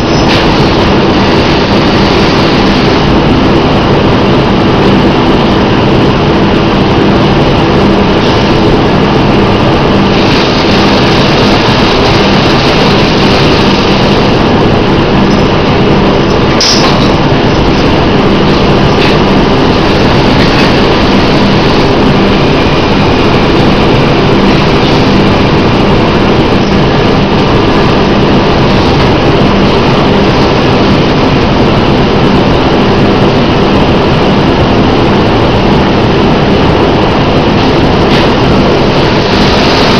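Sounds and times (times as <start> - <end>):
bagging machine running: 0.0 - 39.9
constant low hum: 0.0 - 39.9
sharp clack with hiss: 16.6 - 17.1.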